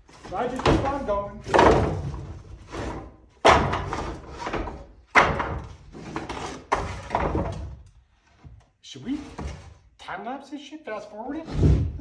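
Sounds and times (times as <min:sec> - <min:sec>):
wooden boards clattering down: 0:00.1 - 0:07.9.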